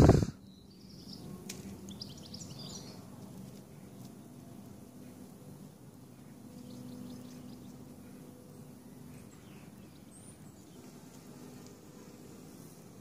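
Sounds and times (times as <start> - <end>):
low background hum: 0.0 - 13.0
bird chirps: 0.4 - 3.0.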